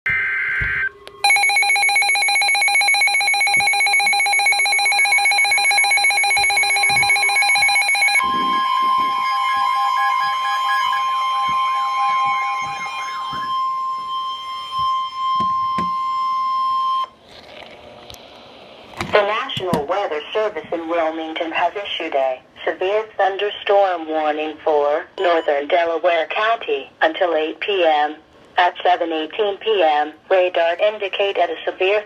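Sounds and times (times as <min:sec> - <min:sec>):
harsh pulsing alarm: 0:00.1 - 0:17.2
steady warning alarm tone: 0:00.1 - 0:17.2.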